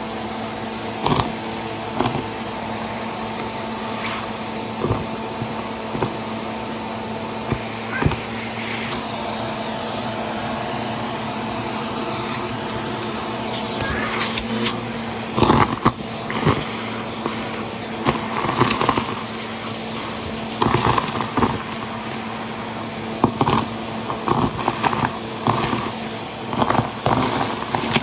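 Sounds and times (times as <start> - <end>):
vacuum cleaner running: 0.0 - 28.0
debris crunching and rattling: 3.2 - 6.7, 15.3 - 28.0.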